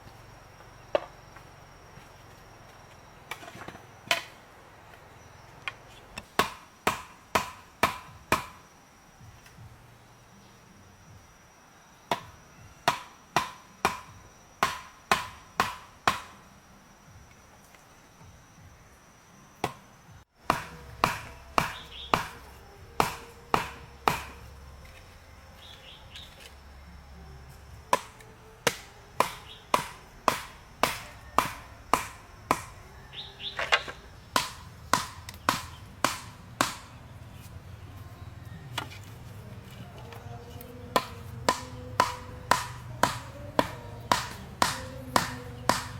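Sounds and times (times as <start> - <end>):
wood being chopped: 6.2 - 8.6, 12.1 - 16.4, 20.4 - 25.0, 27.9 - 32.8, 33.5 - 37.0, 40.0 - 45.9
bird chirping: 20.8 - 23.5, 25.2 - 26.6, 29.2 - 29.9, 32.8 - 45.9.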